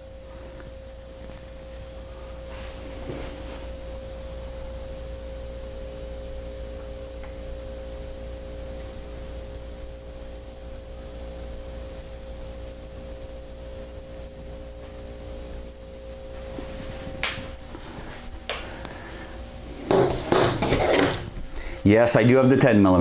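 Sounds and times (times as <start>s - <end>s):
steady background hum: 0.0s - 23.0s
soft rustle: 0.4s - 3.8s, 16.3s - 18.4s.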